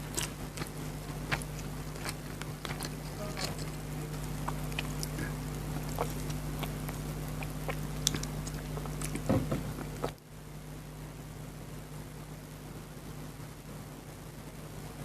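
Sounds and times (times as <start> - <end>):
chewing and mouth sounds: 0.0 - 10.2
low hum: 0.0 - 15.0.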